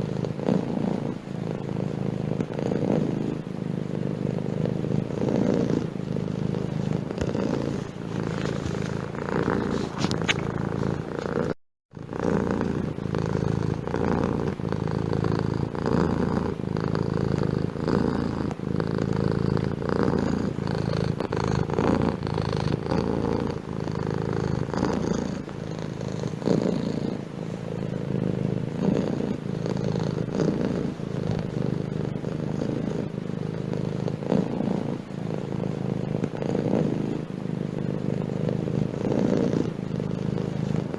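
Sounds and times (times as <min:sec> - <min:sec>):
cat purring: 0:00.0 - 0:40.9.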